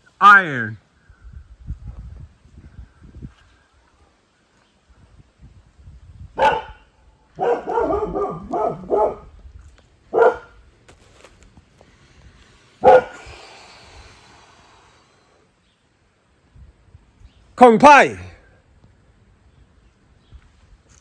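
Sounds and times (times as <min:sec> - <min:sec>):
dog barking: 0:06.4 - 0:09.3, 0:10.1 - 0:10.6, 0:12.8 - 0:13.2.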